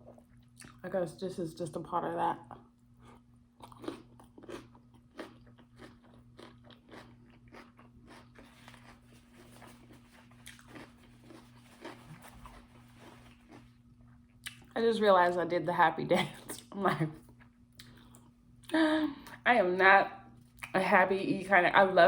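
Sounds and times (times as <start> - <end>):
person chewing crunchy food: 2.9 - 14.7.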